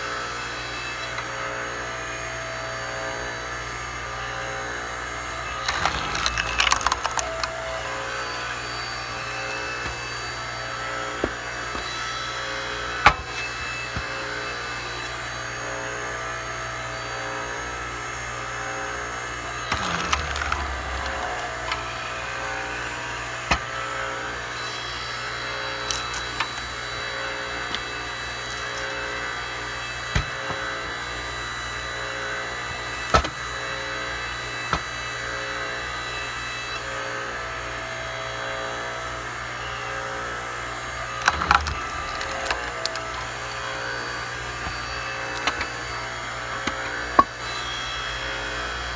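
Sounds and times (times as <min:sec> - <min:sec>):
log splitter humming: 0:05.1 - 0:11.9, 0:19.3 - 0:23.7, 0:40.8 - 0:48.9
firewood cracking and knocking: 0:41.2 - 0:43.3.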